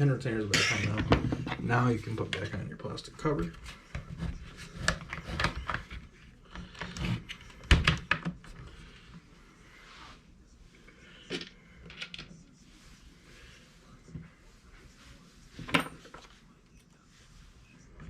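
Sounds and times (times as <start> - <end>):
plastic parts clicking and knocking: 4.2 - 8.6.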